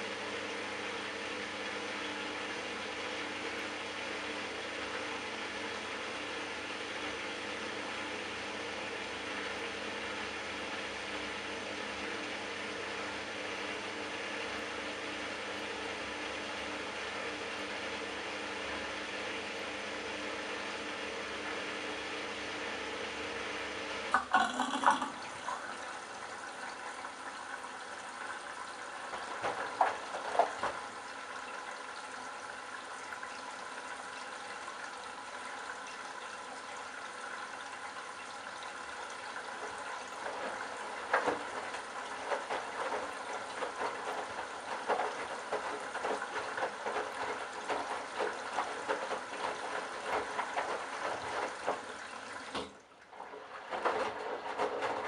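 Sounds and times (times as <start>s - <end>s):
washing machine tumbling: 20.2s - 34.2s, 36.9s - 55.0s
water and laundry sloshing: 24.1s - 55.0s
splashes and thumps: 29.1s - 30.9s, 40.2s - 55.0s.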